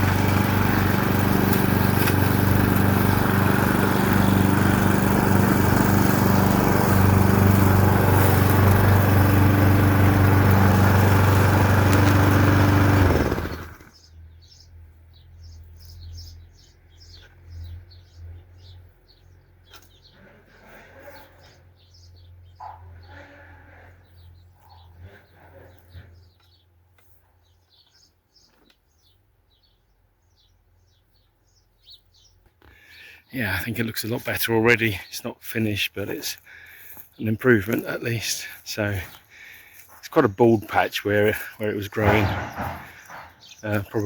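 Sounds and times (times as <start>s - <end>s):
small engine running: 0.0s - 14.1s, 36.1s - 44.0s
birds chirping: 0.0s - 44.0s.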